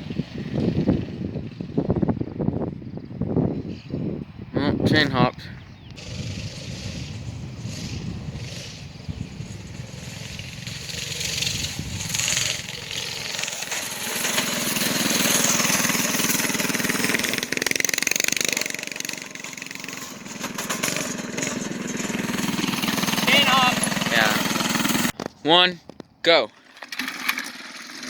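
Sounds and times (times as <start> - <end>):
go-kart engine revving: 6.0 - 25.2, 26.6 - 28.0.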